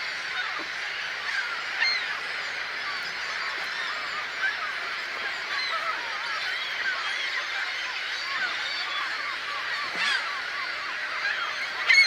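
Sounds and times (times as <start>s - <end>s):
flock of birds honking: 3.0s - 12.0s.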